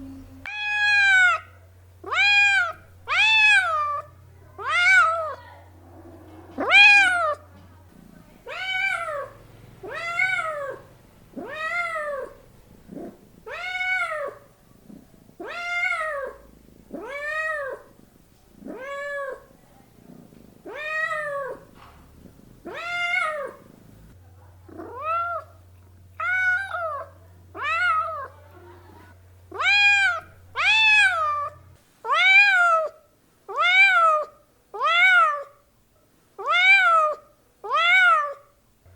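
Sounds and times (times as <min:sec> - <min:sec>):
cat meowing: 0:00.4 - 0:05.6, 0:06.6 - 0:07.4, 0:08.4 - 0:12.4, 0:13.0 - 0:14.5, 0:15.4 - 0:18.0, 0:18.6 - 0:19.5, 0:20.6 - 0:21.8, 0:22.6 - 0:23.8, 0:24.7 - 0:25.6, 0:26.2 - 0:28.6, 0:29.5 - 0:35.6, 0:36.4 - 0:38.5.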